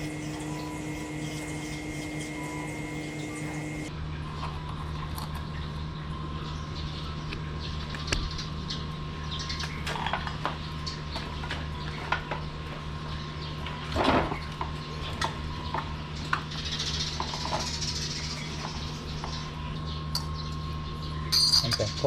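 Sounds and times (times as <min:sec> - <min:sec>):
steady low hum: 0:00.0 - 0:09.8
metal tools clinking: 0:21.3 - 0:22.0.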